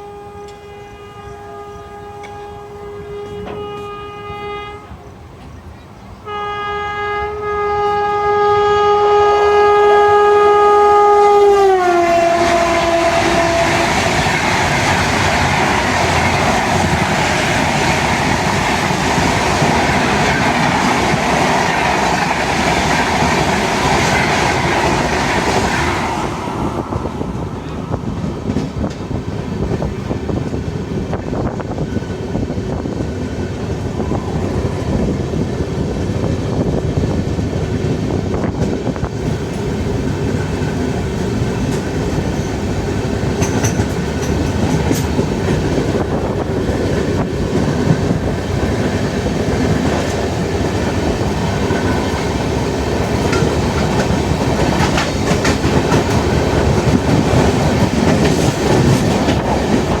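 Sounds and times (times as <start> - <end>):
train rumble: 0.0 - 60.0
wheels clattering over rail joints: 38.4 - 46.0, 49.3 - 60.0.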